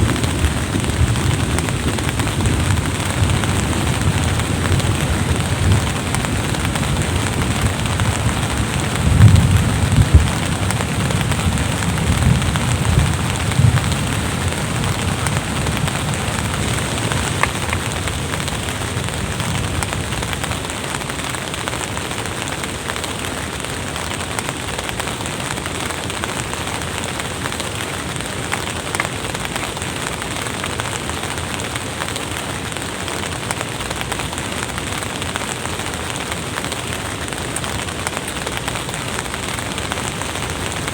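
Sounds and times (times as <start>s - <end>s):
low rumbles: 0.0s - 19.9s
steady rain falling: 0.0s - 40.9s.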